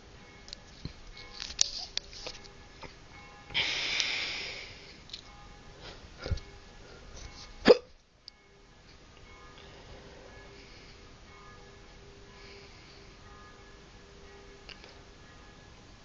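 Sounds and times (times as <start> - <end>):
faint music: 0.0 - 16.0
breathy rush: 3.5 - 5.0
person hiccuping: 7.6 - 7.9.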